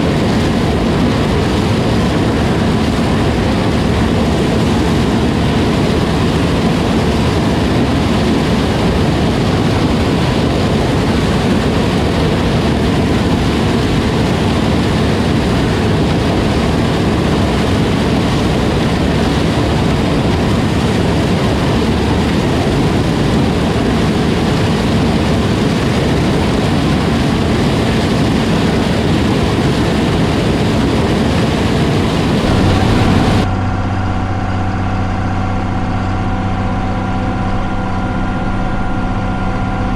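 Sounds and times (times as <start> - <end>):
steady engine hum: 0.0 - 39.9
combine harvester running: 32.2 - 33.7.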